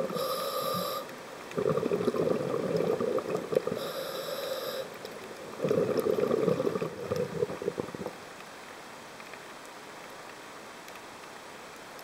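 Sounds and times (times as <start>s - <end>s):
exhaled breath bubbling underwater: 0.0s - 8.2s
low underwater hiss: 0.0s - 9.8s.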